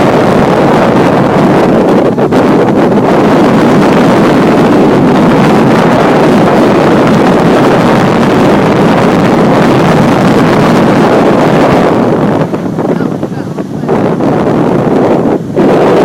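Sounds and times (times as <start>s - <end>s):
wind buffeting microphone: 0.0s - 16.0s.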